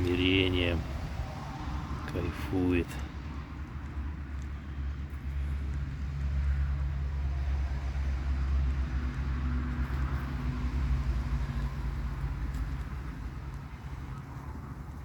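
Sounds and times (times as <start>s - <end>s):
vehicle engine running: 3.2s - 15.0s.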